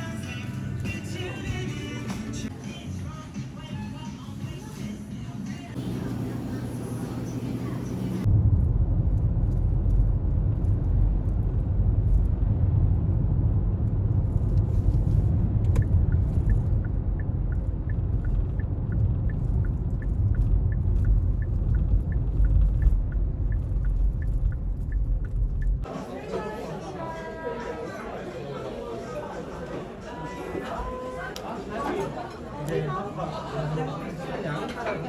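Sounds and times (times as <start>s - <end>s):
road rumble inside car: 5.7s - 25.9s
turn signal ticking: 15.5s - 25.8s.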